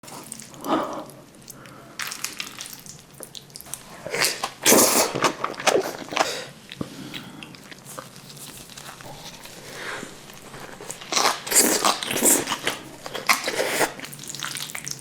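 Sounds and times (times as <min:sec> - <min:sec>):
wet mouth noises: 0:03.2 - 0:15.0.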